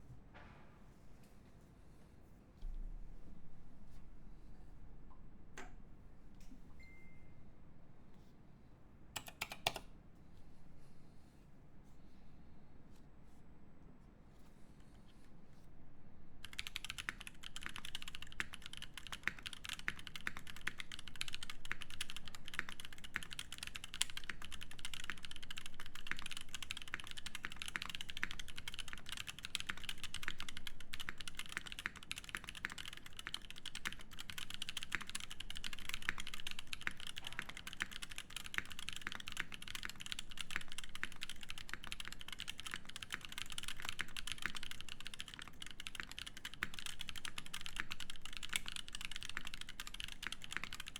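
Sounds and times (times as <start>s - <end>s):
fast typing on mechanical keyboard: 9.2s - 9.9s, 16.4s - 50.9s.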